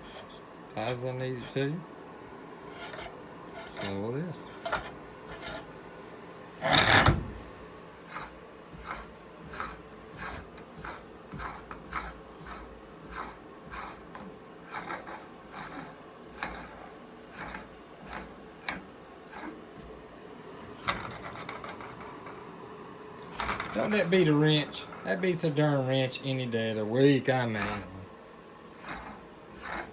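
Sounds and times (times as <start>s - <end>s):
loud scrape: 2.6s - 5.7s, 6.5s - 10.9s
vise screw threads rubbing: 2.6s - 5.7s, 8.0s - 19.6s, 28.7s - 29.9s.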